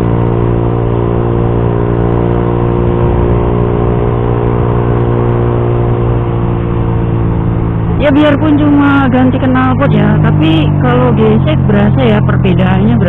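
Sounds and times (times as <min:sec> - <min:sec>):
motorcycle engine at high revs: 0:00.0 - 0:13.0.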